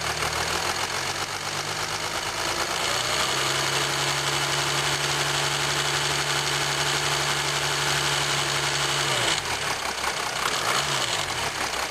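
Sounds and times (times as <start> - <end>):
diesel engine idling: 0.0 - 11.9
engine rattle: 0.0 - 11.9.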